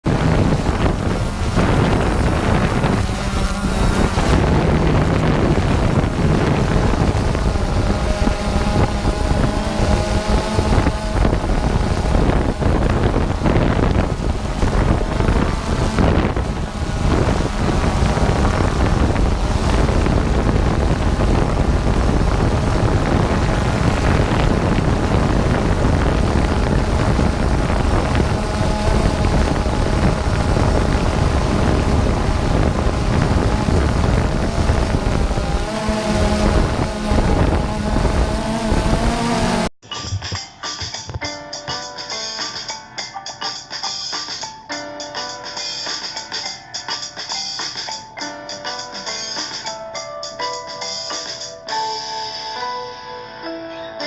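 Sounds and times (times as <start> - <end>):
blizzard wind buffeting microphone: 0.0 - 39.7.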